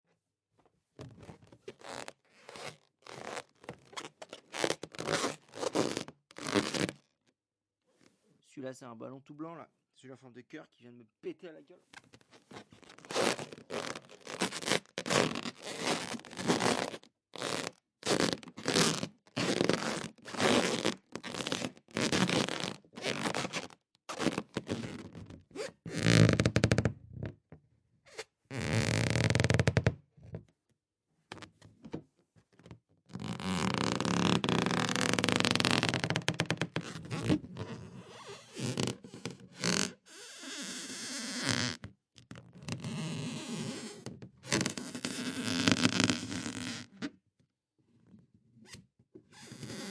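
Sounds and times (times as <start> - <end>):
rubber balloons squeaking: 1.7 - 7.0, 12.4 - 26.9, 28.1 - 29.9, 33.1 - 41.9, 42.6 - 47.1, 49.3 - 49.9.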